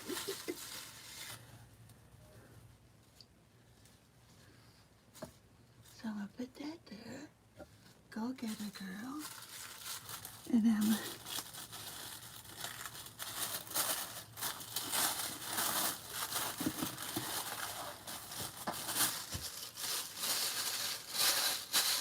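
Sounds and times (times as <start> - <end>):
paper and plastic wrap crinkling: 0.0 - 1.6, 8.4 - 22.0.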